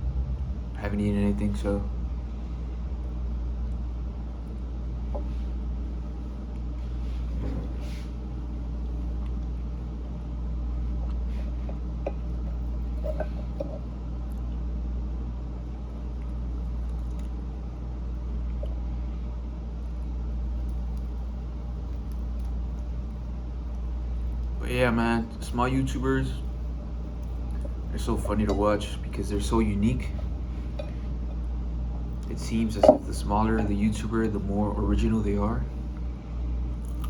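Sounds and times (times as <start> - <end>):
low hum: 0.0 - 37.0
person chewing food: 16.0 - 17.6, 20.0 - 24.6.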